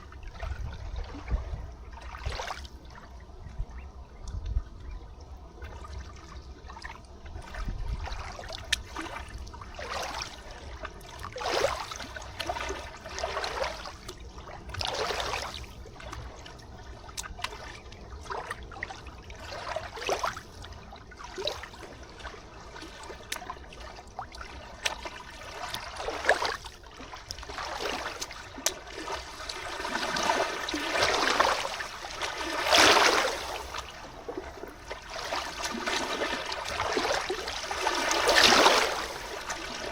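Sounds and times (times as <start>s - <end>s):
river water lapping: 0.0s - 39.9s
water splash: 22.8s - 39.9s.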